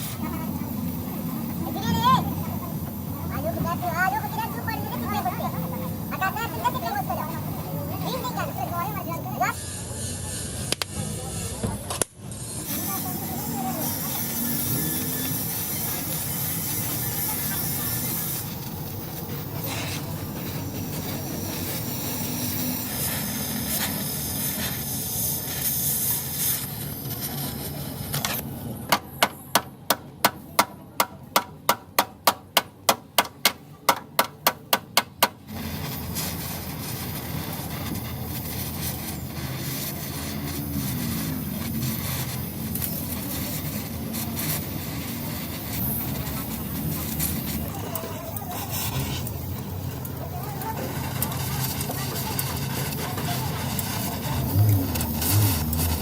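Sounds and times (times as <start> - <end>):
steady noisy hiss: 0.0 - 56.0
hammer striking metal: 28.9 - 35.4.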